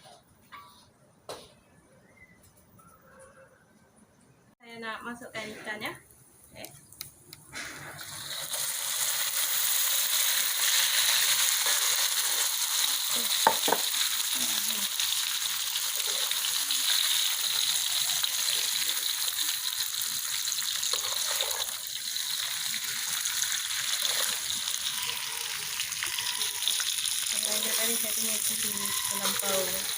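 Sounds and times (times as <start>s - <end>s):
fish sizzling in a pan: 7.5s - 29.9s.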